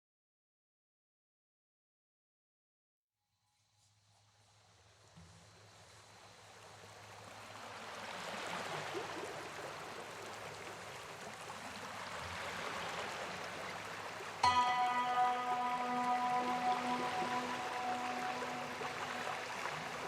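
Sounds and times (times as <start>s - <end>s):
rushing stream: 5.6s - 20.0s
music: 14.4s - 20.0s.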